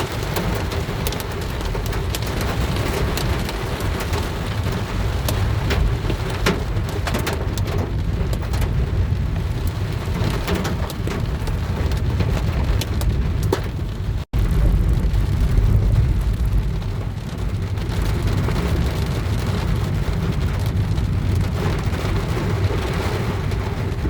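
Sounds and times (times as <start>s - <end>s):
deep low rumble: 0.0s - 24.0s
heavy rain pelting a car: 0.0s - 24.0s.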